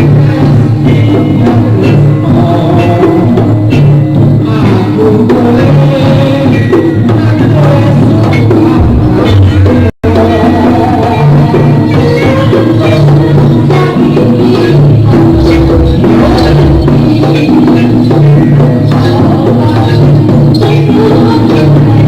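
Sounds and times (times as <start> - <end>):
drums and tuned percussion ensemble: 0.0 - 22.0.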